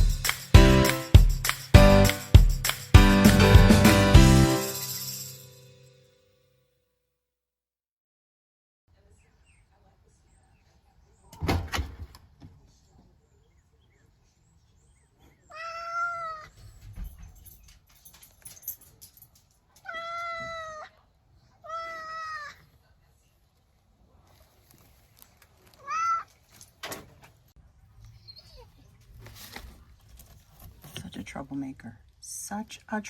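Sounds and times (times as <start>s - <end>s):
cat meowing: 15.5s - 16.6s, 19.8s - 21.0s, 21.6s - 22.6s, 25.8s - 26.4s.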